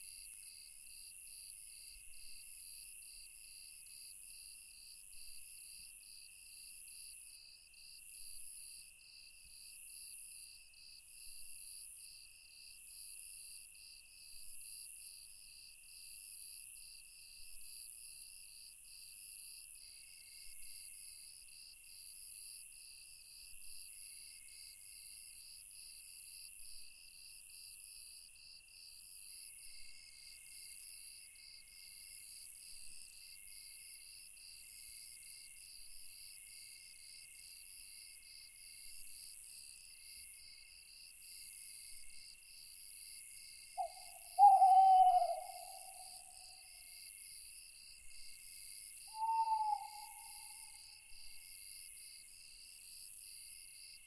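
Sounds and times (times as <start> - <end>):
steady high insect trill: 32.8 - 54.0
lower insect trill: 43.0 - 52.2
cricket chirp pulsing: 43.4 - 47.0, 49.0 - 51.6.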